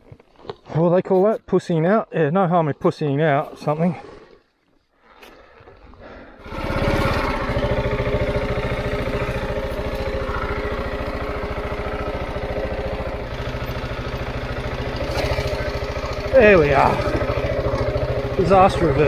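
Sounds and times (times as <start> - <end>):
motorcycle engine idling: 6.4 - 19.0.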